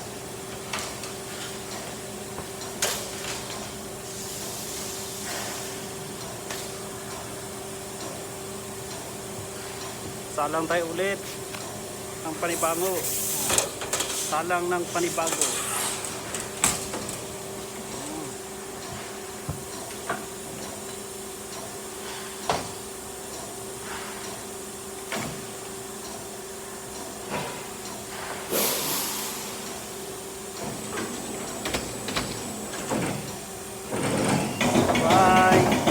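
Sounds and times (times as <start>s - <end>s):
air hissing: 4.1s - 5.9s, 12.4s - 16.2s, 28.2s - 30.6s.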